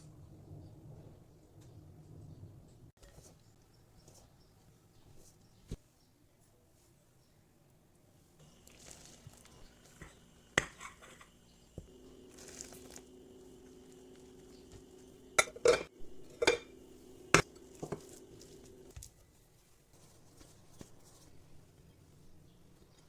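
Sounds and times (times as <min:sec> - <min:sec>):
faint steady hum: 0:08.2 - 0:19.0
utensils and dishes clinking: 0:14.4 - 0:18.9.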